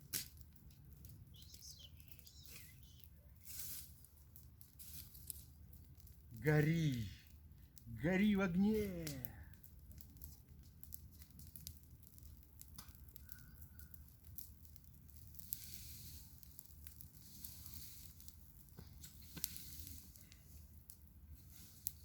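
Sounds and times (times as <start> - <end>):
campfire crackling: 0.0 - 22.0
sharp pops of fire: 0.0 - 22.0
soft hiss: 1.3 - 5.6, 15.2 - 22.0.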